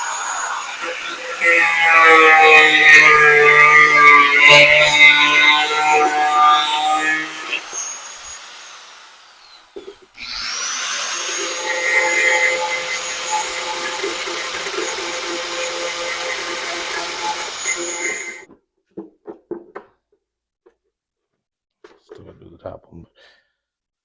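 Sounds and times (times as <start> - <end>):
power tool motor whine: 0.0 - 18.5.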